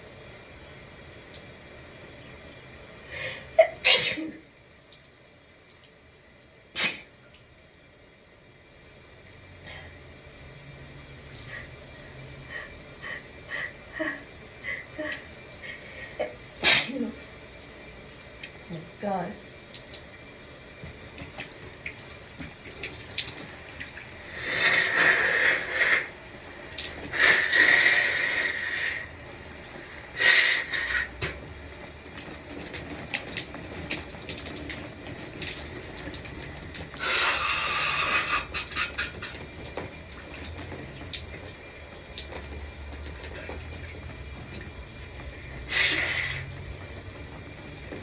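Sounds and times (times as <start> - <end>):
shower running: 0.0 - 48.0
person sneezing: 3.6 - 4.4, 6.8 - 7.1, 16.6 - 17.2.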